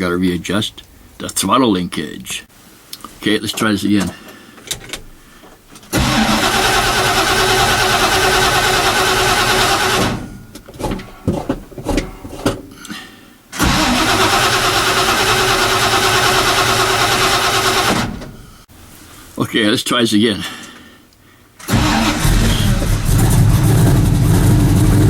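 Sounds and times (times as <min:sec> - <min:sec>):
engine starter cranking: 0:05.8 - 0:10.4, 0:13.6 - 0:18.4, 0:21.6 - 0:25.0.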